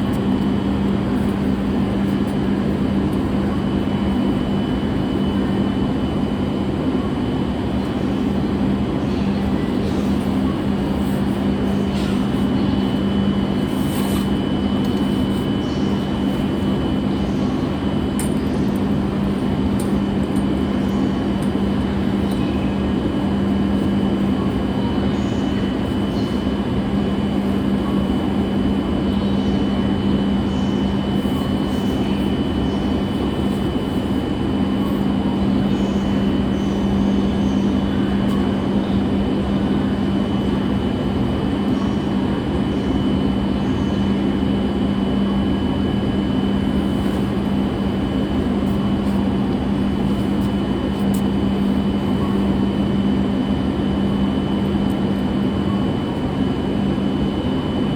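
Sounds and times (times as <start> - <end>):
train carriage running noise: 0.0 - 56.2.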